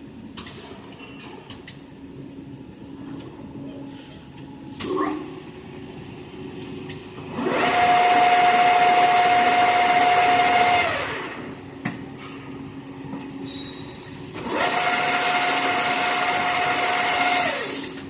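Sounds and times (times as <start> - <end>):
lathe running: 7.3 - 11.5, 14.4 - 17.8.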